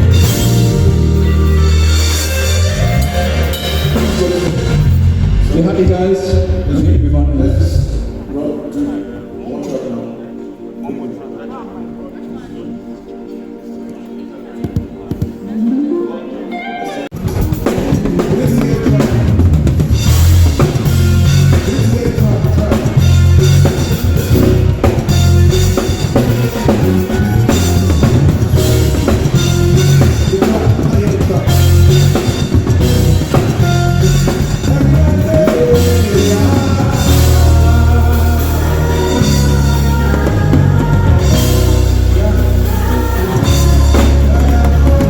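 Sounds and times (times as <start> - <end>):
heavy bass: 0.0 - 8.4, 17.2 - 45.0
live band playing: 0.0 - 45.0.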